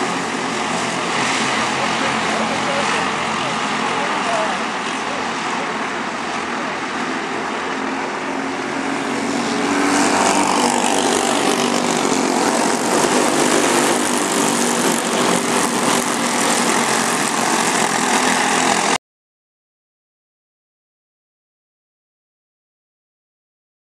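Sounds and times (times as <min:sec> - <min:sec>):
racing kart engine running: 0:00.0 - 0:19.0.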